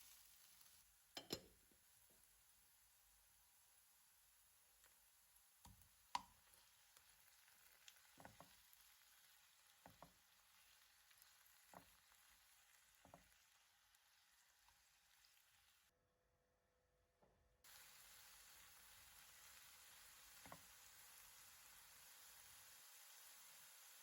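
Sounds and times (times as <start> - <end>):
food sizzling in a pan: 0.0 - 15.9, 17.6 - 24.0.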